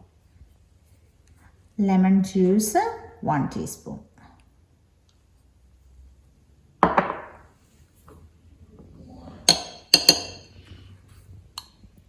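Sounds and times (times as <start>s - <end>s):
teaspoon clinking against bowl: 9.5s - 10.5s.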